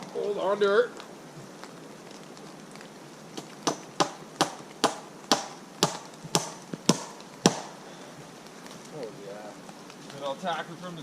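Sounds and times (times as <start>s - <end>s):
hammer striking a nail: 3.7s - 7.7s.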